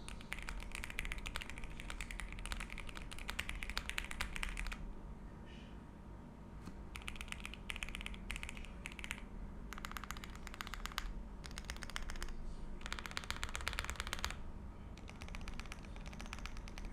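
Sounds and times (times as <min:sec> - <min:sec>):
typing on mechanical keyboard: 0:00.0 - 0:04.8, 0:06.9 - 0:14.4, 0:15.0 - 0:16.9.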